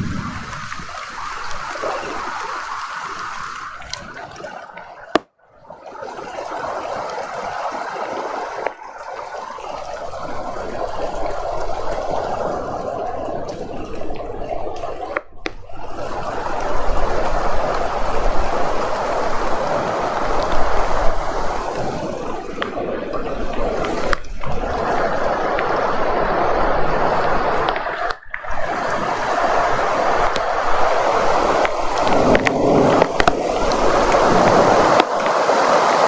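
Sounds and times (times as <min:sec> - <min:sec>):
heavy rain falling: 0:00.0 - 0:05.3, 0:16.0 - 0:36.0.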